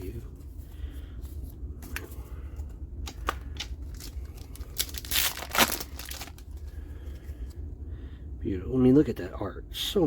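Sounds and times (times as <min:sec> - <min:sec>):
wrapper crinkling and tearing: 0:03.6 - 0:06.7.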